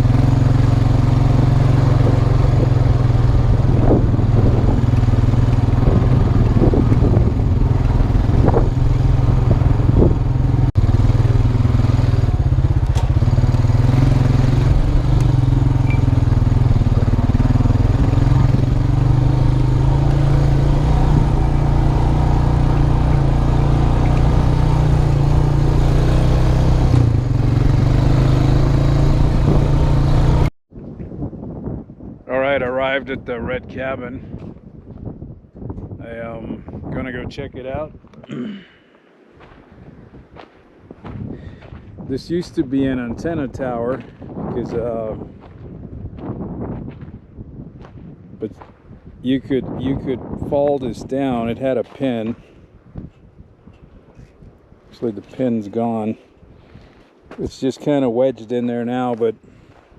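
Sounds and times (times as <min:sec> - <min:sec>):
quad engine running: 0:00.0 - 0:30.5.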